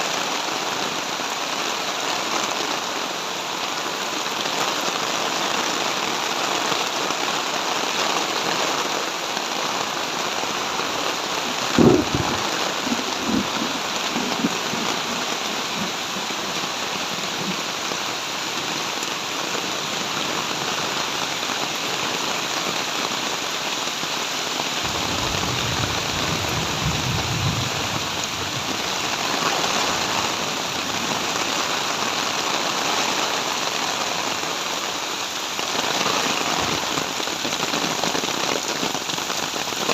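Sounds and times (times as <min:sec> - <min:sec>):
heavy rain falling: 0:00.0 - 0:39.9
low rumble: 0:11.8 - 0:12.5.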